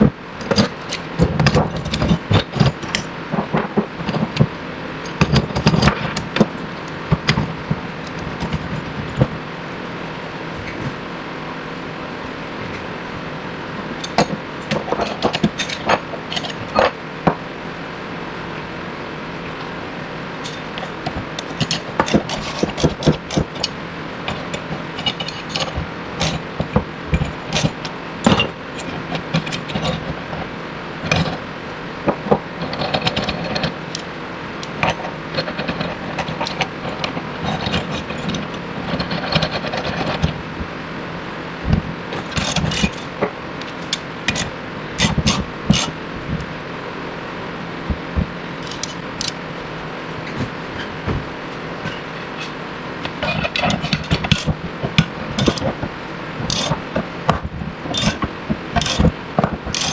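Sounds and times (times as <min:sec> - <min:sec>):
steady hum: 0:00.0 - 0:59.9
metallic tool clicks and knocks: 0:20.4 - 0:23.8, 0:48.6 - 0:49.4, 0:53.0 - 0:55.7, 0:56.5 - 0:59.9.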